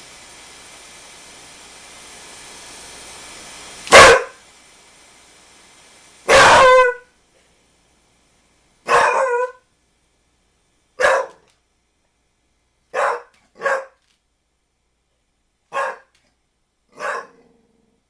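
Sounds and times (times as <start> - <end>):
dog barking: 3.9 - 4.4, 6.3 - 7.0, 8.8 - 9.6, 11.0 - 11.5, 12.9 - 14.0, 15.7 - 16.1, 16.9 - 17.4.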